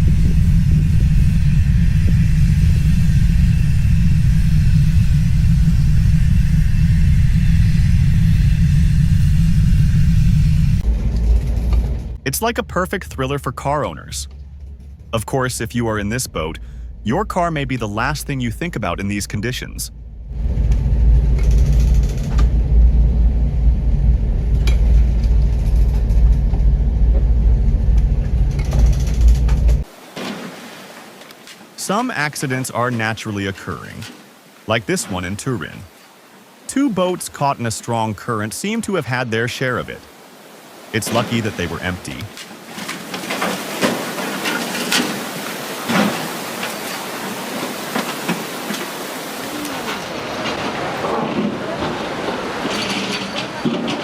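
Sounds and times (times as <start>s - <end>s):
deep rumble: 0.0s - 29.9s.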